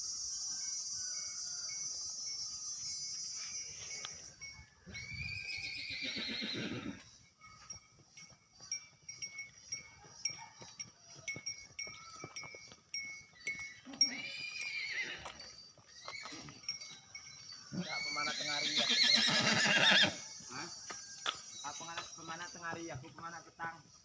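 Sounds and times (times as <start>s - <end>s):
wavering animal cry: 17.7s - 20.2s.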